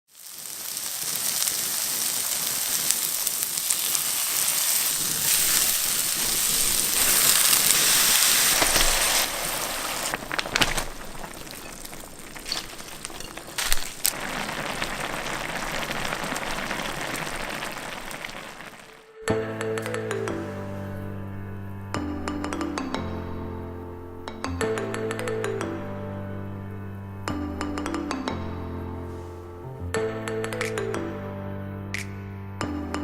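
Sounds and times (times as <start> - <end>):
food sizzling in hot oil: 0.1 - 19.1.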